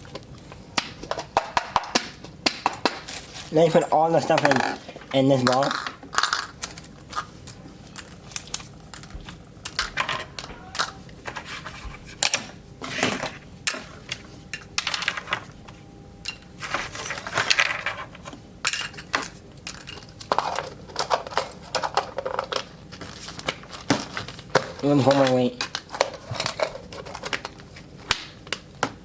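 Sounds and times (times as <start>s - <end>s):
plastic toy pieces clattering: 2.6s - 8.6s, 16.7s - 28.6s.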